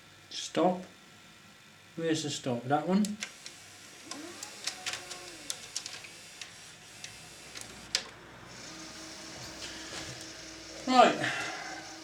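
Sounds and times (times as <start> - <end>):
tape mechanism clicks: 3.0 - 8.2
motor whirring: 3.4 - 12.0.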